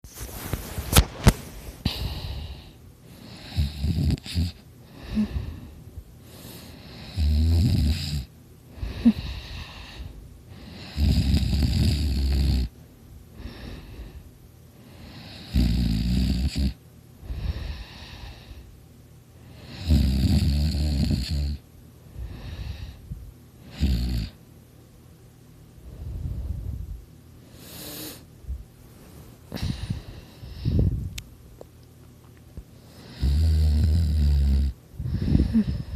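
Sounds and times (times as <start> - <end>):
soft breathing: 0.2 - 7.2, 8.7 - 11.2, 13.3 - 15.5, 17.2 - 19.8, 22.0 - 23.7, 25.8 - 31.2, 34.9 - 35.9
person snoring loudly: 3.2 - 5.6, 6.8 - 9.7, 10.6 - 12.7, 15.0 - 16.8, 19.6 - 21.6, 23.7 - 24.4, 33.0 - 35.9.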